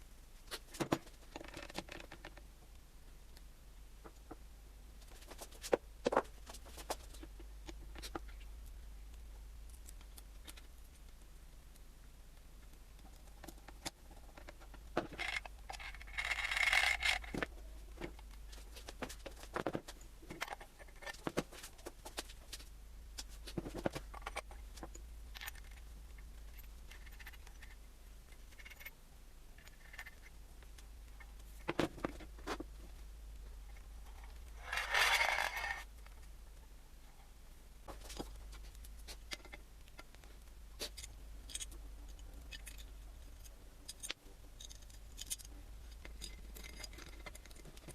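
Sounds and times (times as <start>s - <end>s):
scraping noises: 34.1s - 35.9s.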